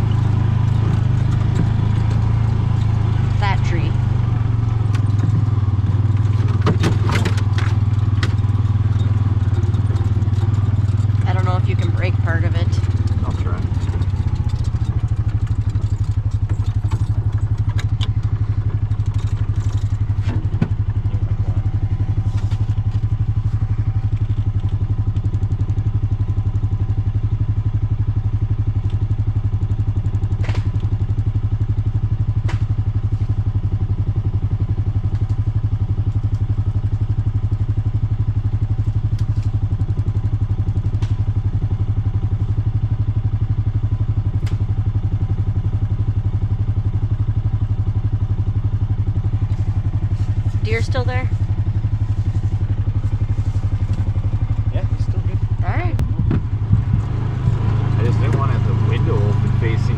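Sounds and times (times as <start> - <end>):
vehicle engine droning: 0.0 - 59.9
knocks and rattles: 4.4 - 24.6, 50.3 - 57.2.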